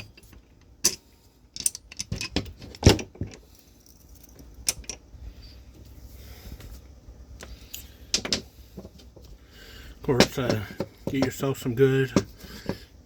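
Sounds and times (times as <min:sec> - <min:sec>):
metal clinks and clicks: 0:01.6 - 0:05.0.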